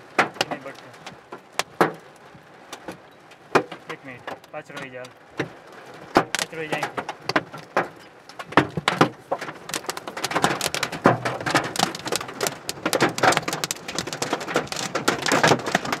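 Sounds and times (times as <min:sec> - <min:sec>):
hail pelting car roof: 0:00.0 - 0:16.0.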